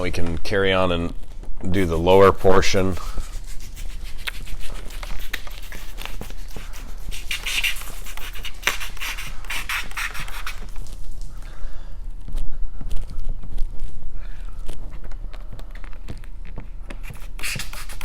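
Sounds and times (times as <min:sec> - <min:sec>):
film rubbing and scraping on bumper: 0:01.7 - 0:10.8.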